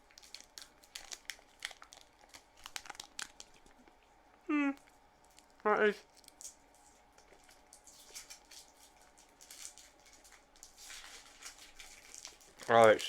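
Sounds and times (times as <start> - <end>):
sticky chewing: 0.0 - 4.1, 4.8 - 13.0.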